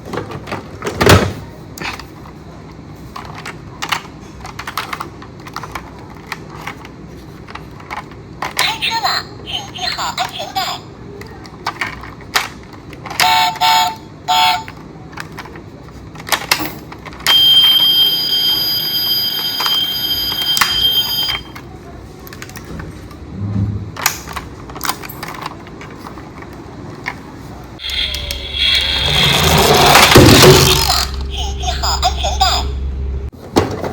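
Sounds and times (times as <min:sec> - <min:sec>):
short electronic beeps: 0:27.8 - 0:32.2
steady high electronic tone: 0:27.8 - 0:33.3.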